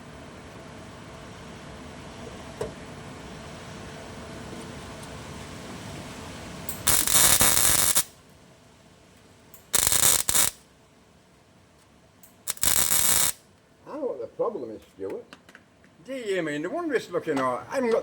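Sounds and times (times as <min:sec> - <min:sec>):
welder arc crackle: 0:05.8 - 0:08.2, 0:09.5 - 0:10.7, 0:12.2 - 0:13.5.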